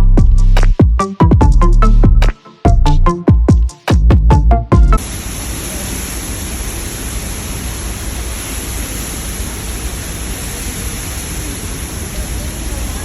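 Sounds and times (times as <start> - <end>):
waterfall rushing: 5.0 - 13.0.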